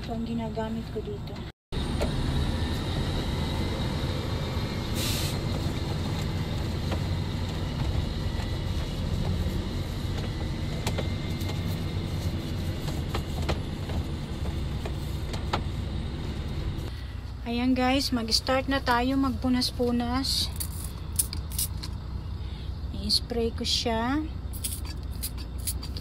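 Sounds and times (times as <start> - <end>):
truck engine rumbling: 0.0 - 26.0.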